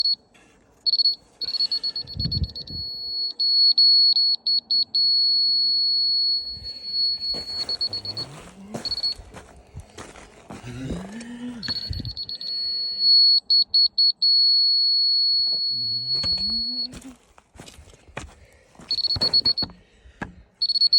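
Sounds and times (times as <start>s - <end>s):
high-pitched electronic alarm beeping: 0.0s - 0.2s, 0.9s - 9.4s, 11.6s - 17.1s, 18.9s - 19.8s, 20.6s - 20.9s.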